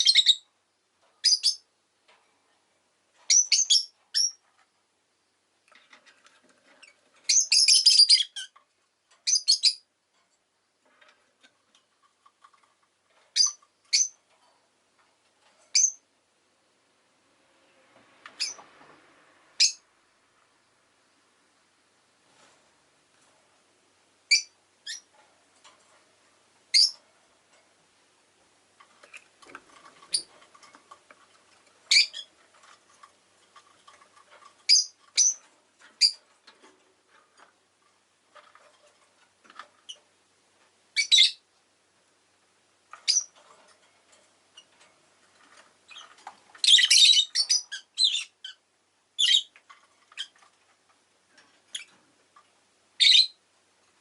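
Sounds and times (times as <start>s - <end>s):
lovebirds chirping and squawking: 0.0s - 0.5s, 1.2s - 1.7s, 3.2s - 4.5s, 6.6s - 8.6s, 9.2s - 9.9s, 13.3s - 14.3s, 15.7s - 16.0s, 18.3s - 18.6s, 19.6s - 19.9s, 24.3s - 25.1s, 26.7s - 27.0s, 29.0s - 36.7s, 40.9s - 41.5s, 42.9s - 43.4s, 45.4s - 50.6s, 51.4s - 52.0s, 53.0s - 53.4s.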